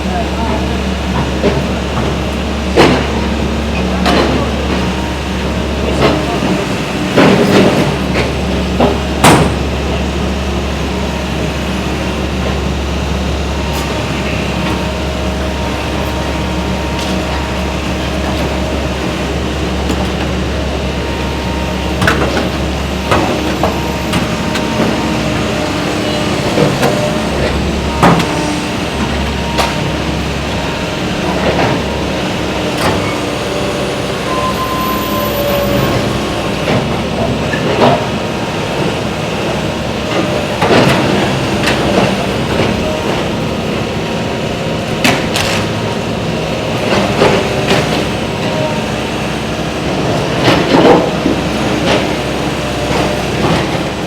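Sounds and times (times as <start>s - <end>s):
low mechanical drone: 0.0s - 54.0s
sharp knocks and clanks: 5.9s - 9.9s, 13.6s - 30.6s.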